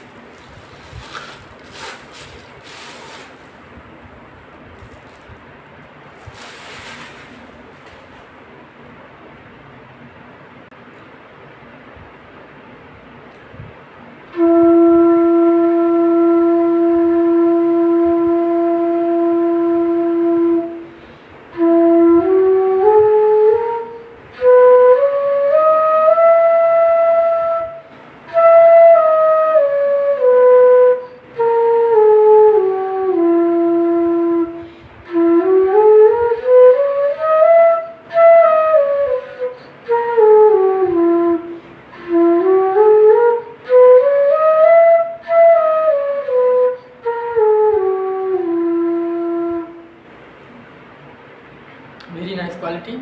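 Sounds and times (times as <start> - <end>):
bamboo flute playing: 14.3 - 49.9.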